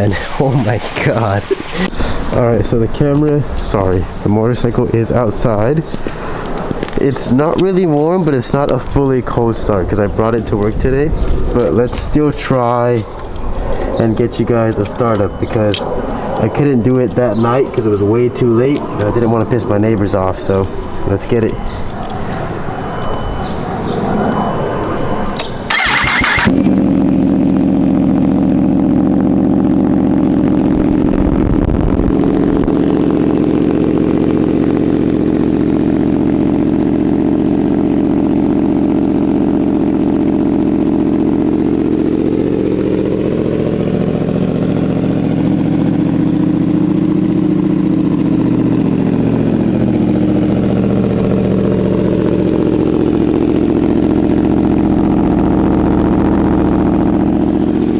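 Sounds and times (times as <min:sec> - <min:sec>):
motorcycle engine idling loudly: 0:01.8 - 0:22.4, 0:25.3 - 0:57.9
motorcycle engine cranking: 0:25.3 - 0:57.9.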